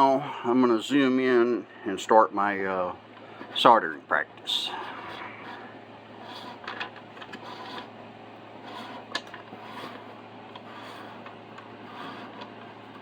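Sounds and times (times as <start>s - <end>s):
steady low hum: 0.0s - 13.0s
rubbing and scraping on workbench: 4.7s - 7.9s, 8.6s - 13.0s.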